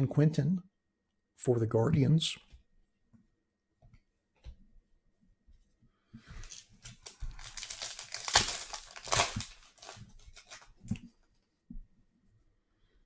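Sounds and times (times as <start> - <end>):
foil wrapper tearing and crinkling: 6.4 - 10.8.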